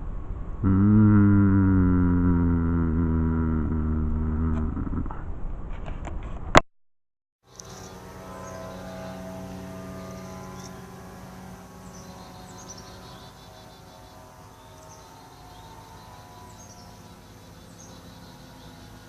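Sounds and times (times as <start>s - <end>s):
low droning hum: 0.0s - 6.4s, 7.5s - 19.0s
small birds chirping: 7.5s - 9.2s, 9.9s - 11.0s, 11.8s - 19.0s.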